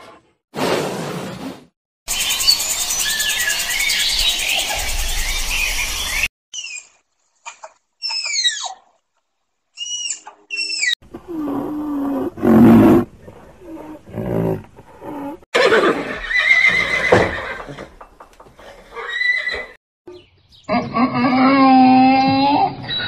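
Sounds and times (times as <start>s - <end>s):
high falling animal chirps: 2.1s - 7.0s, 9.8s - 11.0s
deeper animal calls: 20.7s - 23.0s.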